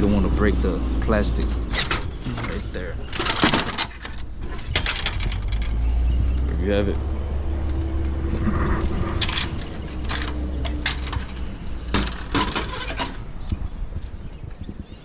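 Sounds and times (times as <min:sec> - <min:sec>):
low steady hum: 0:00.0 - 0:14.7
plastic parts clicking and rattling: 0:01.7 - 0:05.8.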